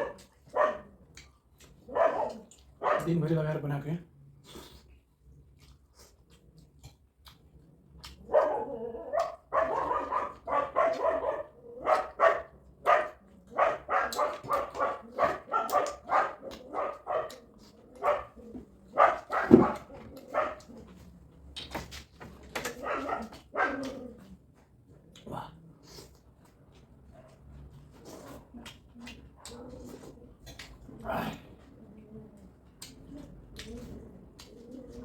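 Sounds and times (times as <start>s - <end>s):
dog barking and yipping: 0.0s - 0.9s, 1.8s - 3.2s, 8.2s - 20.8s, 22.6s - 24.1s.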